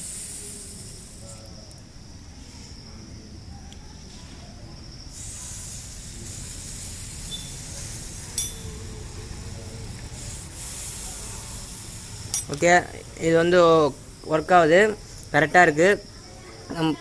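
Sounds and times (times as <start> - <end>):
water hissing on heating element: 0.0 - 1.5, 5.1 - 17.0.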